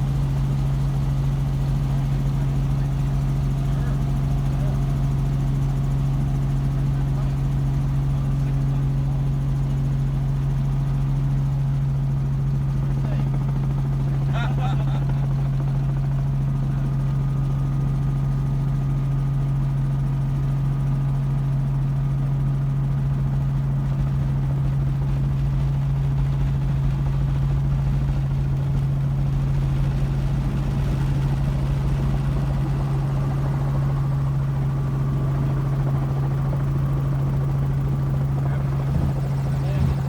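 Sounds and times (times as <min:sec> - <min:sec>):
low vehicle drone: 0:37.4 - 0:40.0.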